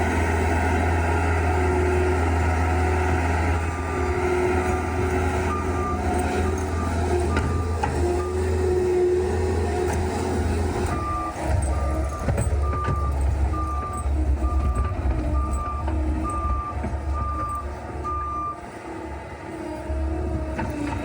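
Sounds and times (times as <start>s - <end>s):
diesel engine running: 0.0s - 21.0s
backup alarm beeping: 10.5s - 18.6s.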